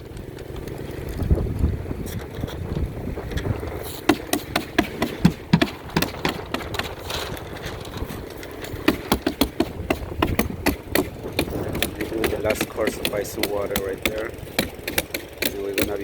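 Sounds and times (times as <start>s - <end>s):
steady low rumble: 0.0s - 16.0s
quick sharp tapping: 4.0s - 7.0s, 8.4s - 16.0s.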